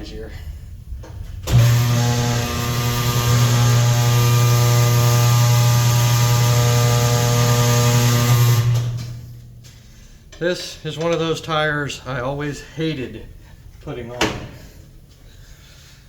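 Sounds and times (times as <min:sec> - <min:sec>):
electric motor humming: 0:01.4 - 0:09.4.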